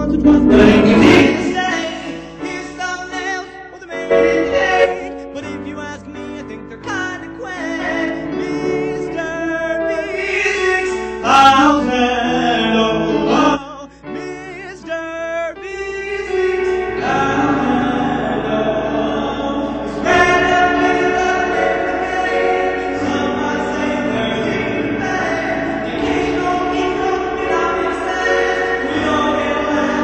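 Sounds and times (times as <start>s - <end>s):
voices singing together: 0.0s - 2.9s, 3.9s - 5.5s, 16.2s - 30.0s
song music: 0.0s - 6.8s, 16.3s - 30.0s.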